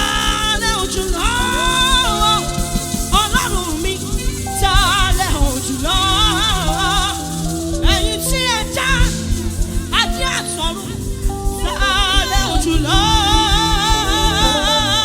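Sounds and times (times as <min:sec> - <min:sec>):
gospel band music: 0:00.0 - 0:15.0.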